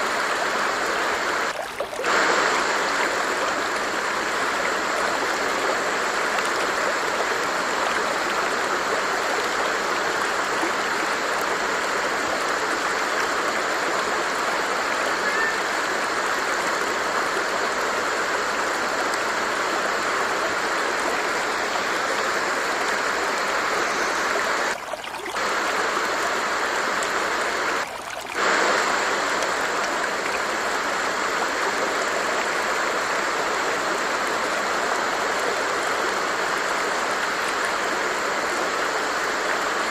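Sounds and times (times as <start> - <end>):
stream water rushing and babbling: 0.0 - 39.9.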